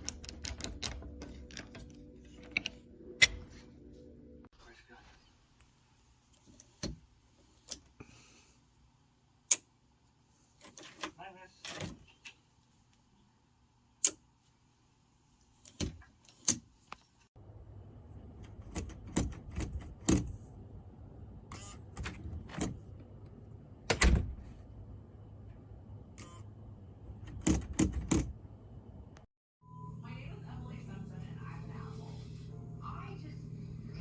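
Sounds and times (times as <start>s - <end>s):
door lock clicks and rattles: 0.0s - 3.4s, 27.2s - 28.3s.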